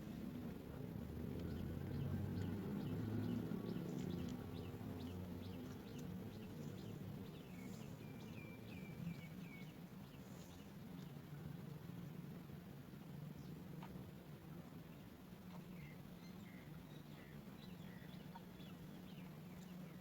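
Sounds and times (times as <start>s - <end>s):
small birds chirping: 1.9s - 11.2s.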